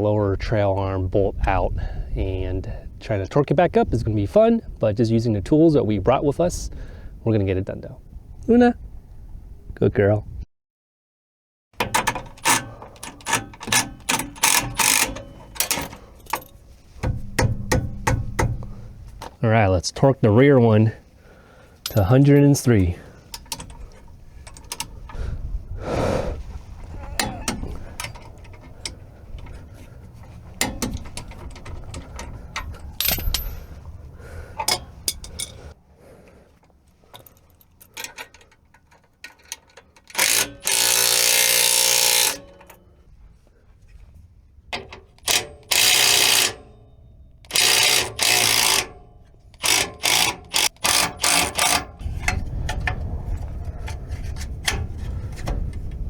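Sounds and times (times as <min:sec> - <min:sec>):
wrench and socket clicking: 0:11.8 - 0:19.0, 0:23.3 - 0:25.2, 0:37.9 - 0:42.8, 0:44.8 - 0:46.8, 0:47.5 - 0:52.4
impact wrench bursts: 0:11.8 - 0:19.2, 0:40.1 - 0:42.4, 0:45.2 - 0:46.8, 0:47.5 - 0:49.0, 0:49.6 - 0:51.9.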